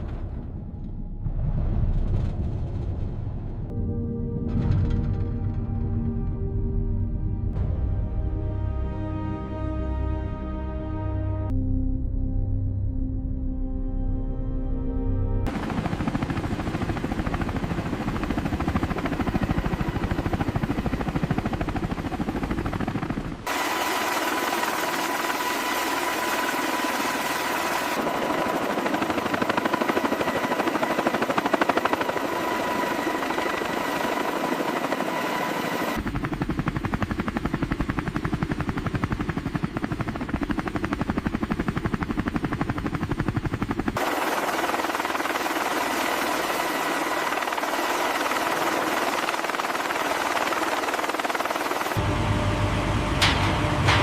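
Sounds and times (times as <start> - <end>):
helicopter rotors beating: 15.5 - 54.0.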